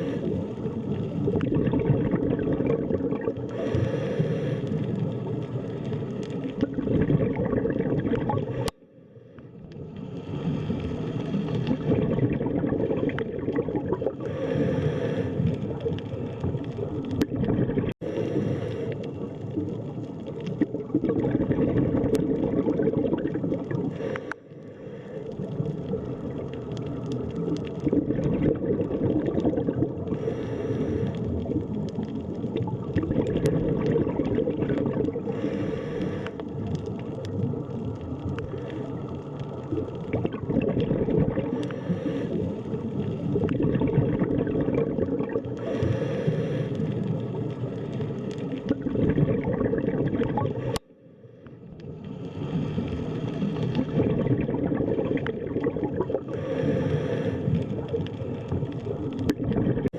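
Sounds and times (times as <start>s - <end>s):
underwater rush and gurgle: 0.0s - 59.9s
bright water hiss: 56.4s - 58.5s.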